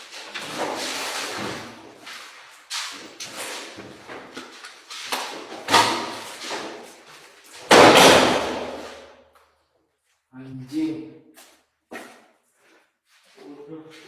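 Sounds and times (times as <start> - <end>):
loud slam-like bang: 7.7 - 9.0.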